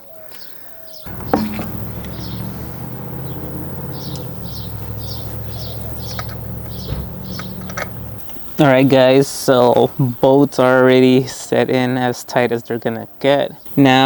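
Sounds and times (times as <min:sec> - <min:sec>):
small bird chirping: 0:01.0 - 0:08.6.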